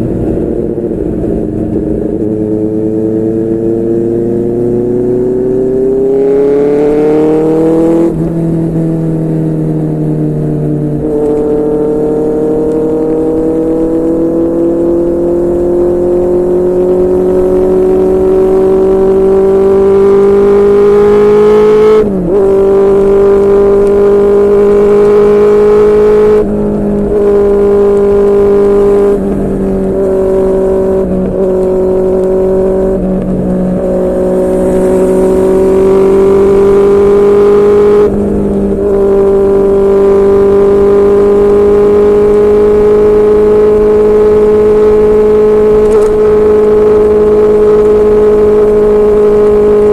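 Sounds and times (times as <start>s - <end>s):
motorcycle engine at high revs: 0.0s - 49.9s.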